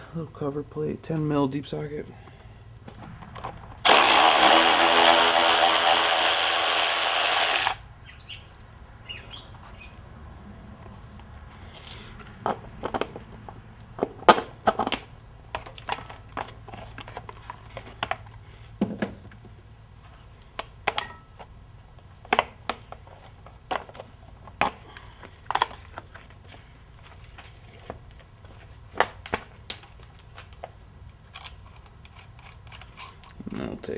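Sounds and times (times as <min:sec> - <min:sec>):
socket wrench ratcheting: 0:03.8 - 0:07.8, 0:31.2 - 0:33.6.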